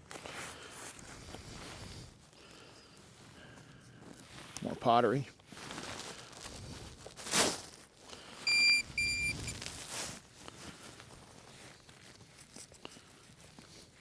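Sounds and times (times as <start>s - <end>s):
rustle of soil or leaves: 5.3s - 8.4s, 9.5s - 12.3s
metal detector beeps: 8.5s - 9.6s.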